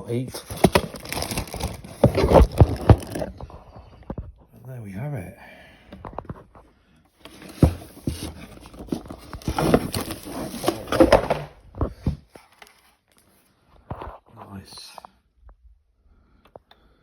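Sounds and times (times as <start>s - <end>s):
rustling packaging: 0.0s - 4.2s, 7.2s - 13.4s.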